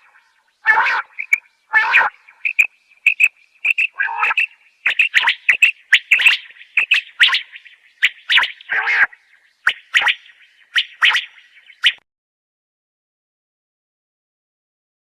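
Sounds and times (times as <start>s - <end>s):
quail chirping: 0.0s - 12.0s
quail harsh calls: 0.0s - 12.0s.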